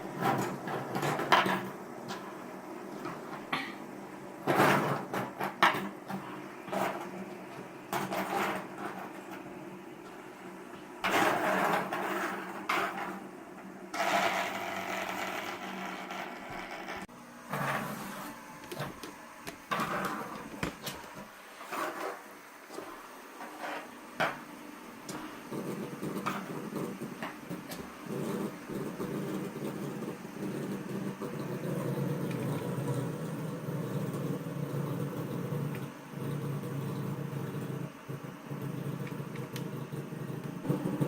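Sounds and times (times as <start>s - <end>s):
spinners clicking and clattering: 13.9s - 17.1s, 25.1s - 41.0s
fidget spinners whirring: 13.9s - 41.0s.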